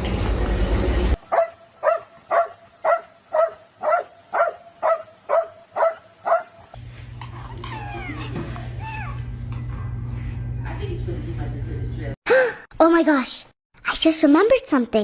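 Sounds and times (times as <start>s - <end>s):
dog barking: 1.2s - 6.8s.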